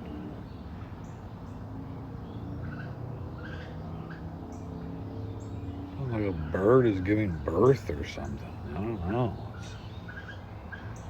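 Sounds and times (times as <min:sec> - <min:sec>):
faint bird calls: 0:02.5 - 0:11.0.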